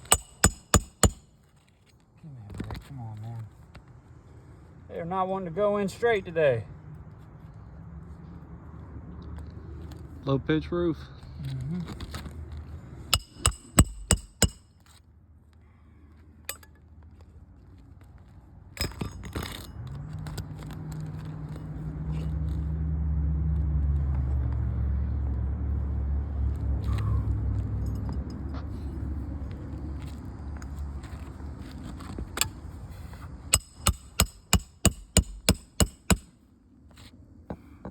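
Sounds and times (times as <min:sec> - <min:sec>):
hammer striking nails: 0:00.0 - 0:01.3, 0:13.1 - 0:14.7, 0:33.5 - 0:36.4
vehicle engine droning: 0:19.6 - 0:31.4.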